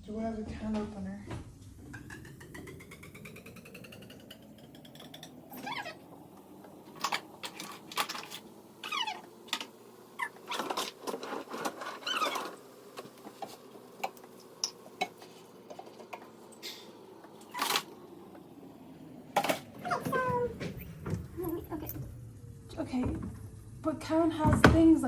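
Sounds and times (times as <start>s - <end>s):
kitchen utensils clattering: 4.8s - 18.0s, 19.4s - 20.9s
short squeaks: 5.5s - 6.0s, 8.8s - 9.3s, 11.6s - 12.7s.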